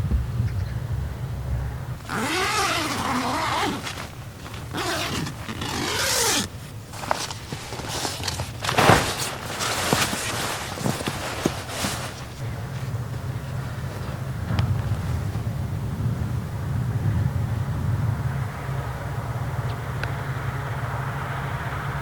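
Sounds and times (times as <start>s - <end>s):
zipper pulled: 2.0s - 12.3s
clicks and knocks of gear handled: 2.0s - 12.4s.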